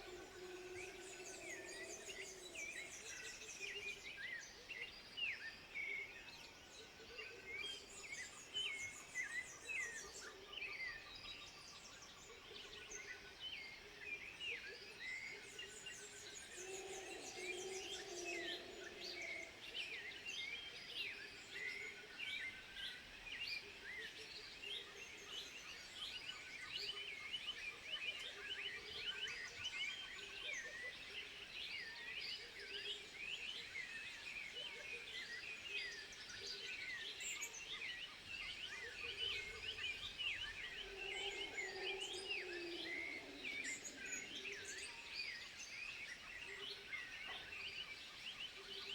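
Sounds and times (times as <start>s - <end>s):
lower longer animal call: 40.7s - 44.7s.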